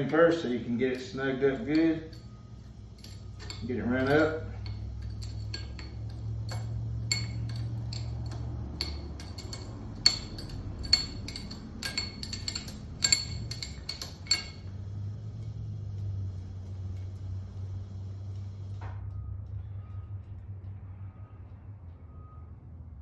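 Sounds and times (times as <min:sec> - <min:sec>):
wrench clinking on metal: 0:00.0 - 0:17.4
steady low hum: 0:00.0 - 0:23.0.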